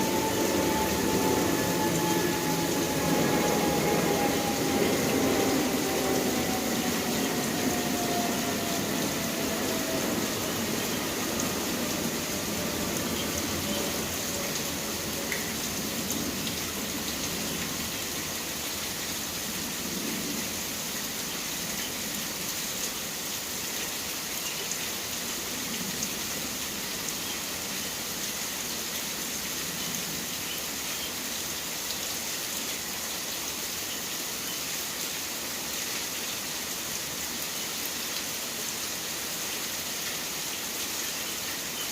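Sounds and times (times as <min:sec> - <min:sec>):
faint tones sliding down in pitch: 0:00.0 - 0:15.8
rain falling: 0:00.0 - 0:41.9.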